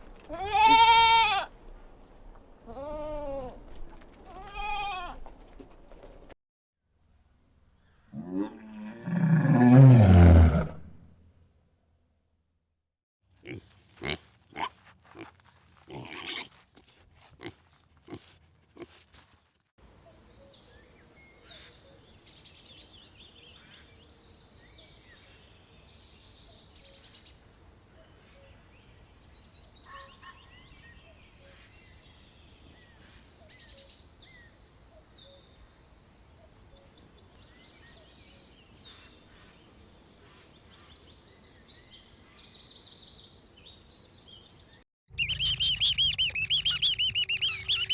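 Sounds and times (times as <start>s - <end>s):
birds chirping and trilling: 37.5s - 47.9s.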